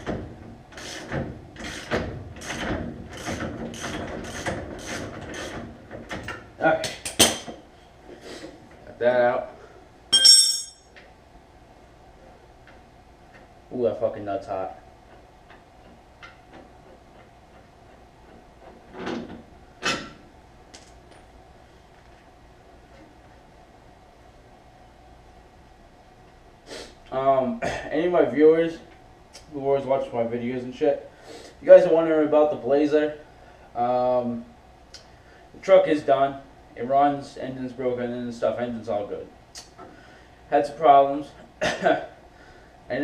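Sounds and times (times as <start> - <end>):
faint steady hum: 0.0 - 43.0
tools clunking: 10.1 - 10.9.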